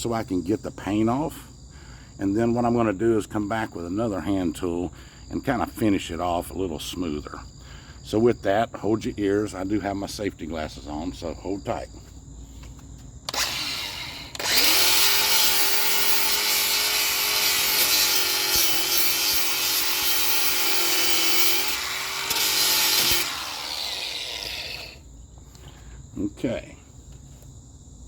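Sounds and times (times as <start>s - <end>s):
angle grinder grinding metal: 13.3s - 25.0s.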